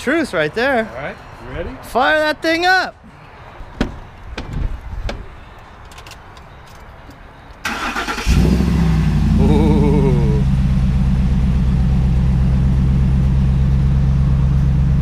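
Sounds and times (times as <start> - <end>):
engine starter cranking: 7.6 - 9.0.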